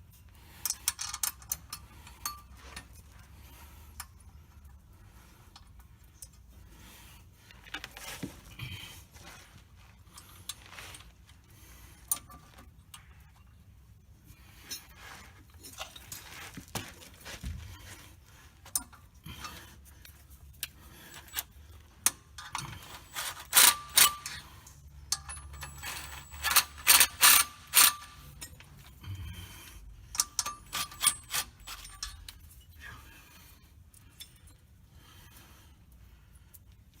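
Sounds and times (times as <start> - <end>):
hand tools clanking on metal: 22.1 - 28.7, 30.2 - 32.8.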